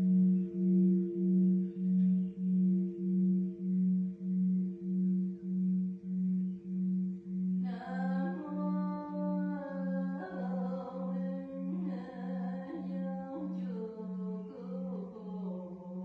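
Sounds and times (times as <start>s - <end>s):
low pulsing drone: 0.0s - 16.0s
person chanting in long notes: 7.6s - 16.0s.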